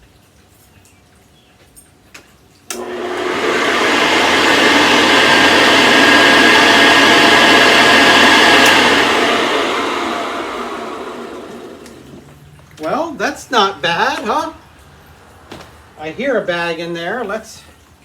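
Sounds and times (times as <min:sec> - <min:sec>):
vacuum cleaner switch click: 0:02.7 - 0:12.2
vacuum cleaner motor whine: 0:02.7 - 0:12.4.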